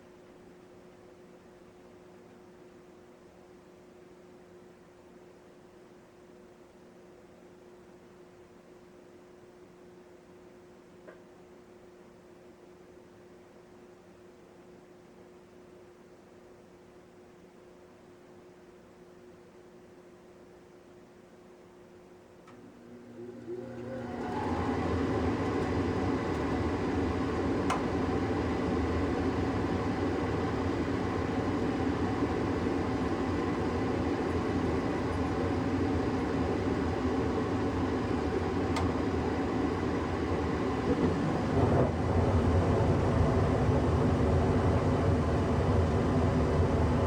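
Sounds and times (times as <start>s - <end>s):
furnace inducer motor humming: 22.4s - 47.0s.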